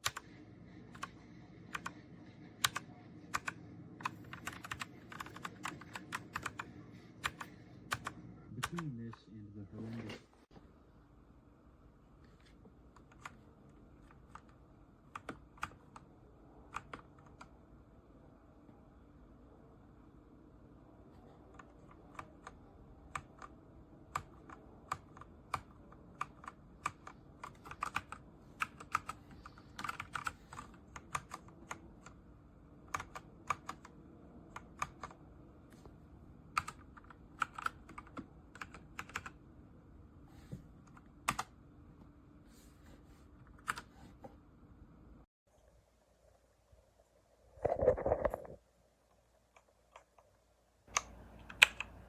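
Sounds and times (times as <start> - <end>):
mechanical keyboard typing: 1.7 - 2.0, 2.6 - 8.8, 14.0 - 16.0, 16.7 - 17.5, 21.5 - 32.2, 32.9 - 35.2, 36.5 - 39.4.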